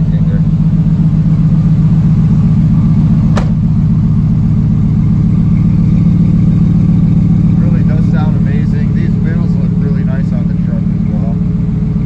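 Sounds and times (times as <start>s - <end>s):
truck engine idling: 0.0s - 12.0s
sharp click: 3.3s - 3.6s.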